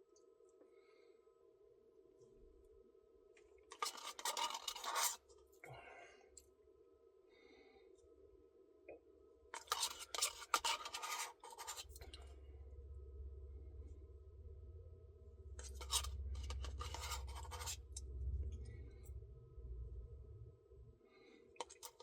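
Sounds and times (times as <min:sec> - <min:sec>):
faint steady hum: 0:00.0 - 0:22.0
scratchy scraping: 0:03.7 - 0:05.2, 0:09.6 - 0:12.2, 0:15.4 - 0:19.2.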